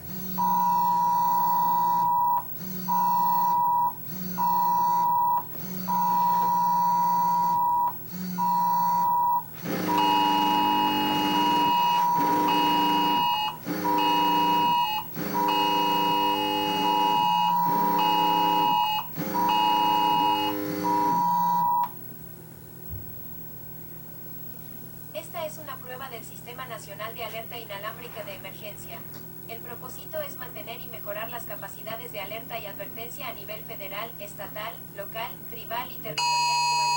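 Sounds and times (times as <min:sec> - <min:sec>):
low buzz: 0:00.0 - 0:25.1.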